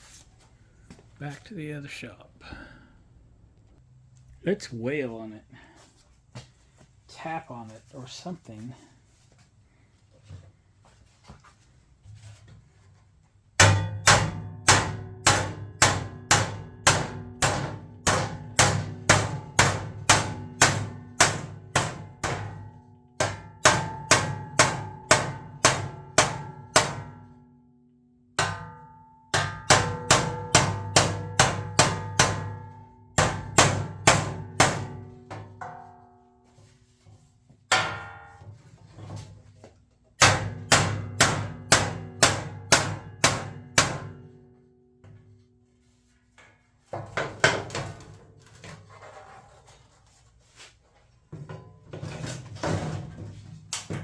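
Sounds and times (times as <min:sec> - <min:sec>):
hammer ringing on metal: 0:13.6 - 0:27.3, 0:28.4 - 0:36.0, 0:37.7 - 0:38.4, 0:40.2 - 0:44.2.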